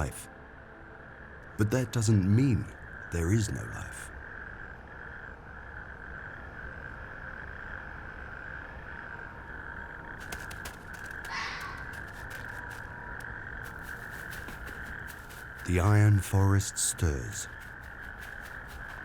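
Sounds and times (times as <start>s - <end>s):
high-pitched night ambience: 0.0s - 19.0s
harsh animal call: 11.2s - 12.5s.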